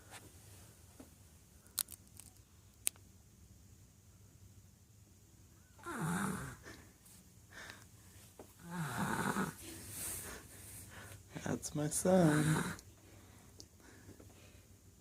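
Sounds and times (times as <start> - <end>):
child snoring: 5.8 - 6.8, 8.6 - 9.7, 12.2 - 12.8.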